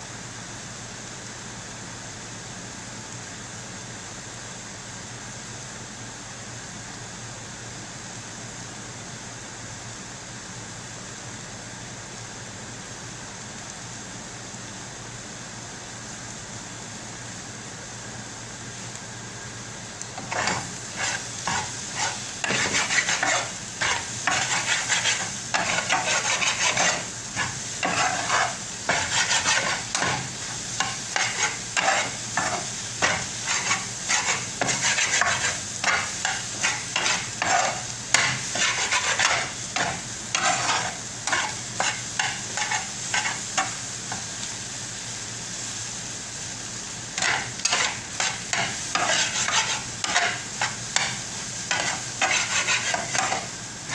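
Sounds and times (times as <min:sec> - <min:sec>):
oil sizzling: 0:00.0 - 0:53.9
spatula scraping a pan: 0:20.2 - 0:44.2, 0:47.2 - 0:53.9.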